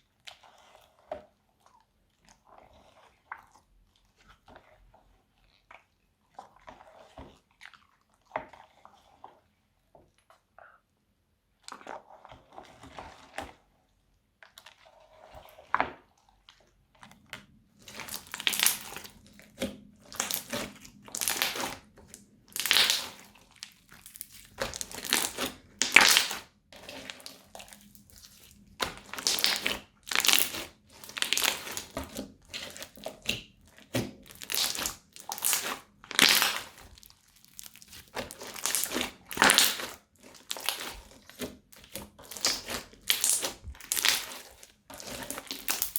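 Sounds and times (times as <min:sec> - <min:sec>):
slime crackling when squeezed: 0:22.5 - 0:23.2, 0:24.0 - 0:26.4, 0:29.0 - 0:31.9, 0:34.2 - 0:40.9, 0:41.8 - 0:45.9.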